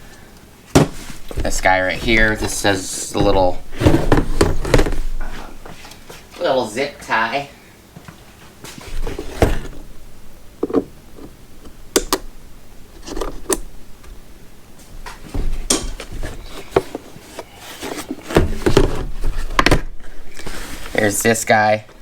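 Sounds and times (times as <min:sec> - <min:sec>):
packaging rustling: 0:00.8 - 0:05.3, 0:15.9 - 0:21.1.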